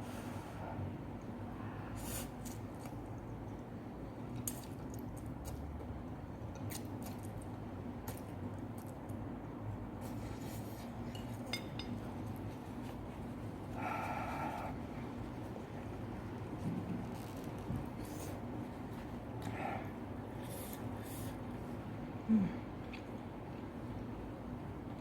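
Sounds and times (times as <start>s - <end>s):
steady low hum: 0.0s - 25.0s
utensils clinking against bowl: 11.1s - 12.0s.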